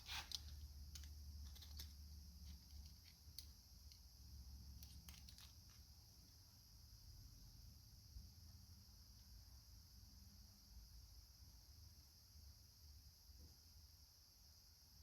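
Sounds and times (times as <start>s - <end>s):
light clicks on small metal parts: 0.0s - 4.1s.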